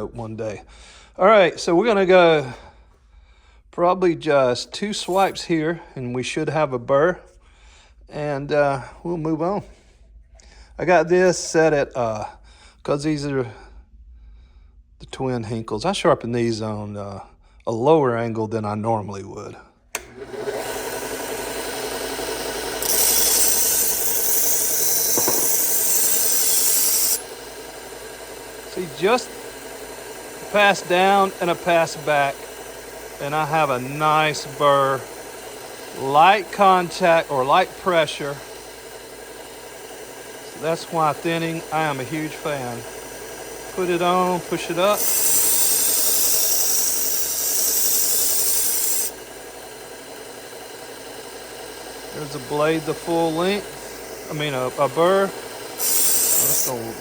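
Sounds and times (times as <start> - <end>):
belt grinder motor hum: 20.0 - 57.0
blade grinding hiss: 20.6 - 57.0.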